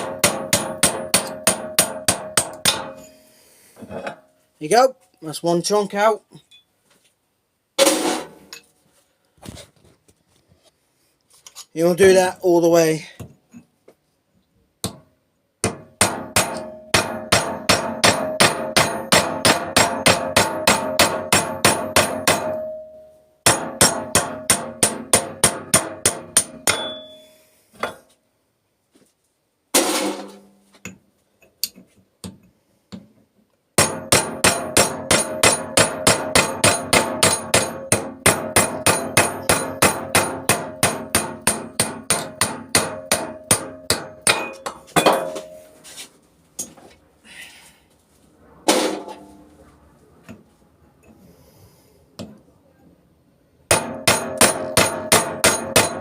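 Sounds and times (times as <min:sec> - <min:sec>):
hammer striking metal punch: 0:00.0 - 0:03.1, 0:14.8 - 0:28.0, 0:33.8 - 0:45.6, 0:53.7 - 0:56.0.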